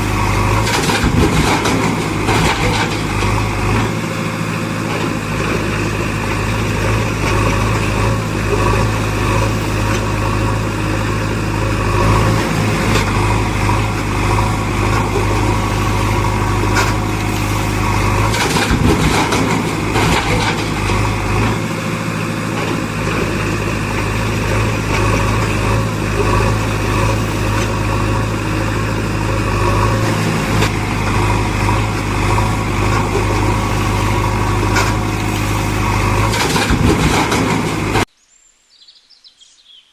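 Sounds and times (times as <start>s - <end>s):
engine-like hum: 0.0s - 38.2s
knocks and clatter: 0.6s - 6.0s, 12.1s - 27.8s, 29.6s - 38.1s.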